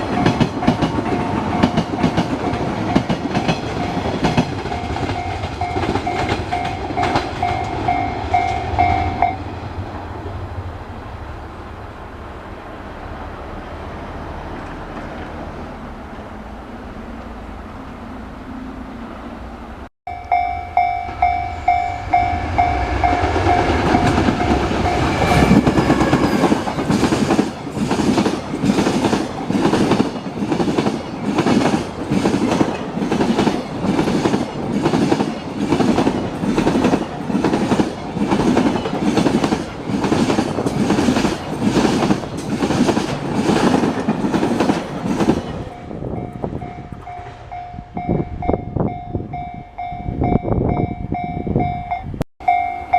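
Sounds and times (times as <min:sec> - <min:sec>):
train wheels clattering over rail joints: 0:00.0 - 0:08.6, 0:23.8 - 0:47.5
level-crossing warning bell: 0:00.0 - 0:09.5, 0:20.1 - 0:27.9, 0:45.6 - 0:52.9.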